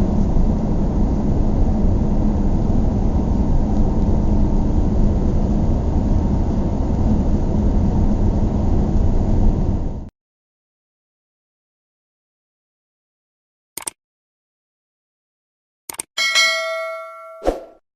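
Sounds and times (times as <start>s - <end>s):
car engine and road noise: 0.0s - 10.0s.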